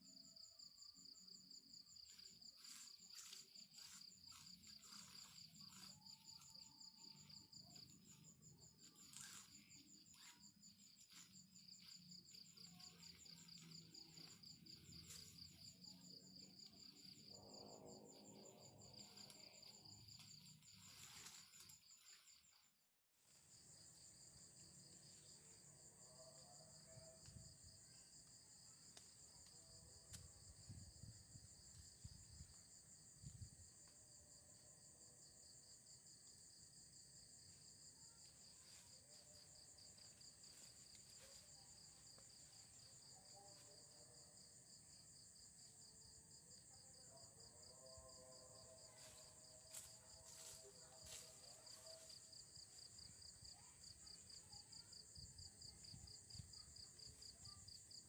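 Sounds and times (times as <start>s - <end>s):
insects trilling: 1.9s - 22.5s, 38.2s - 43.9s.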